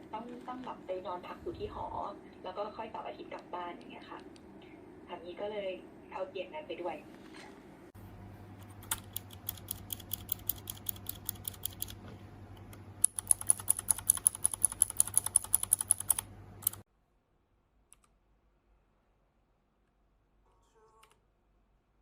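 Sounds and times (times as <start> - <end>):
faint steady hum: 0.0 - 22.0
mechanical keyboard typing: 8.8 - 12.0, 13.0 - 16.8.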